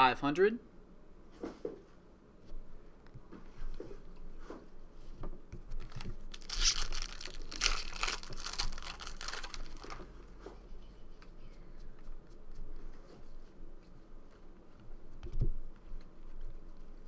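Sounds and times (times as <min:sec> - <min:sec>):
foil wrapper crinkling and tearing: 0:05.8 - 0:10.1.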